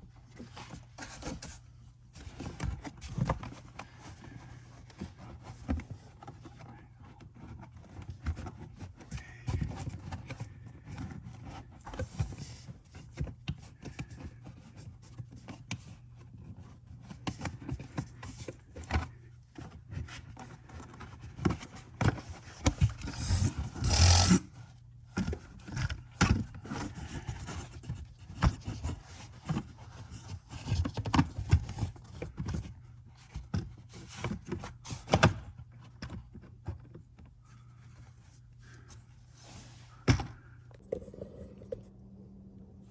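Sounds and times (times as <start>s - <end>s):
steady low hum: 37.4s - 42.9s.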